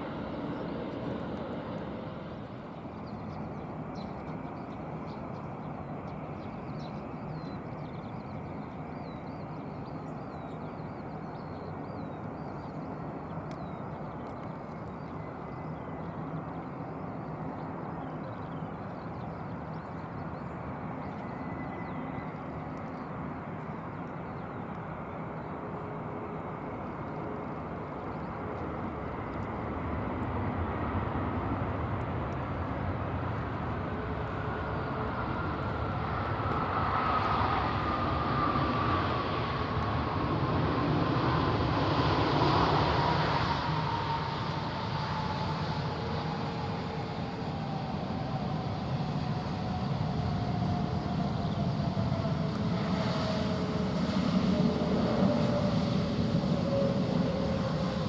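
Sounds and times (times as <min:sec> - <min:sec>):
jet engine whine falling in pitch: 0:00.0 - 0:58.0
jet aircraft rushing noise: 0:28.4 - 0:58.0.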